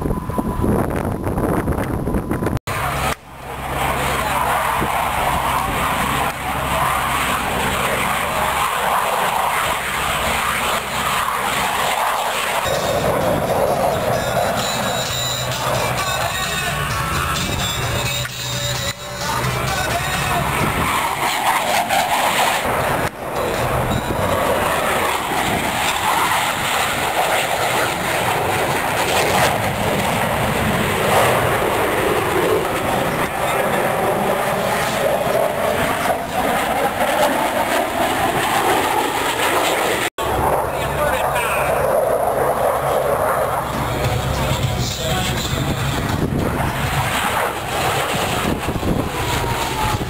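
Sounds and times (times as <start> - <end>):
airplane engine droning: 0.0 - 50.0.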